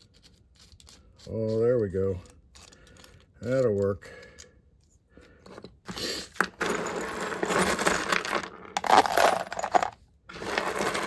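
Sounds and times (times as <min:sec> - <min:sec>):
metal screws clattering: 0:05.5 - 0:11.0.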